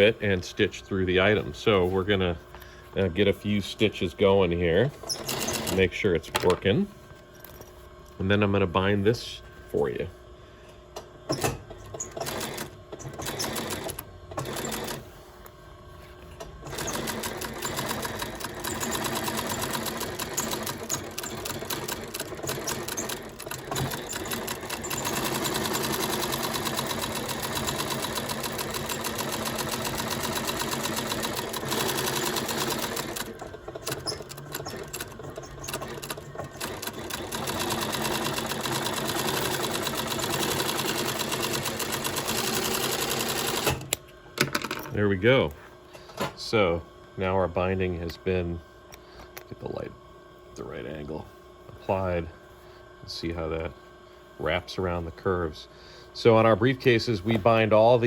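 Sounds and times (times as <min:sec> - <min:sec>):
sewing machine stitching leather: 0:05.0 - 0:05.9, 0:11.3 - 0:15.1, 0:16.6 - 0:43.9.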